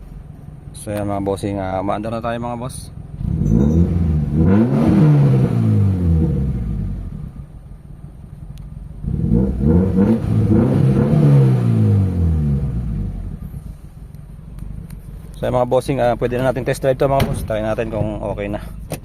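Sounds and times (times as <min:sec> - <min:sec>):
car engine revving: 0:03.1 - 0:07.6, 0:08.8 - 0:17.9.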